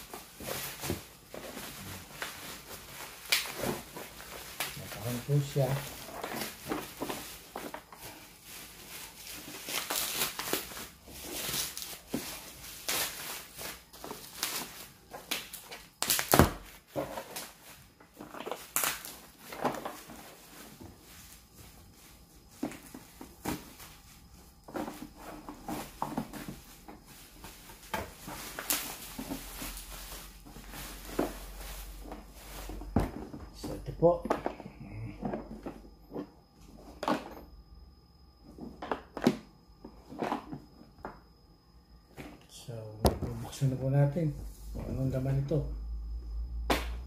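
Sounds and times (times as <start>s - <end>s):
parcel wrapping rustling: 0.0s - 34.5s.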